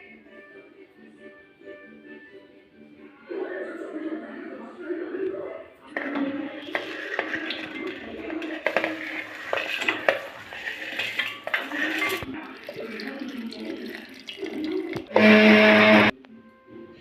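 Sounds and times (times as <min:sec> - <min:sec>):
utensils and dishes clinking: 0:05.9 - 0:16.1
water: 0:06.0 - 0:15.9.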